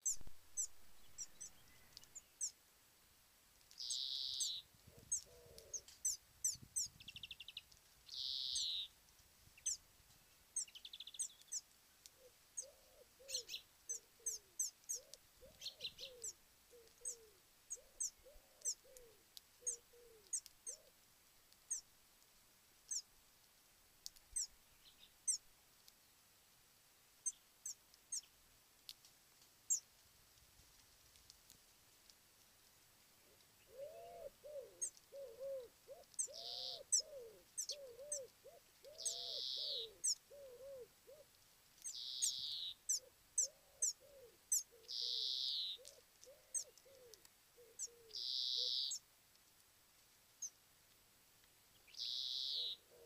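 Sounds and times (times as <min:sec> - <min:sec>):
high falling bird chirps: 0:03.8 - 0:08.9, 0:36.2 - 0:38.3, 0:38.9 - 0:40.8, 0:41.8 - 0:47.1, 0:47.7 - 0:49.0, 0:51.9 - 0:52.9
harsh buzzy bird calls: 0:38.9 - 0:40.8.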